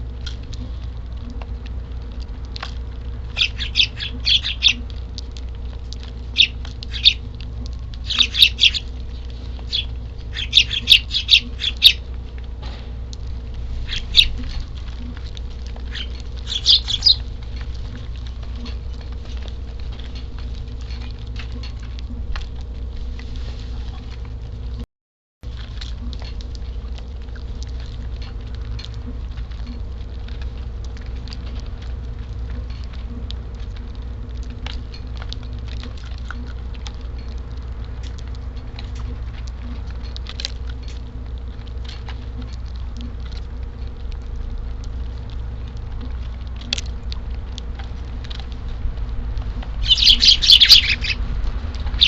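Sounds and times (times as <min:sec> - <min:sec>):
low rumble: 0:00.0 - 0:24.8, 0:25.4 - 0:52.0.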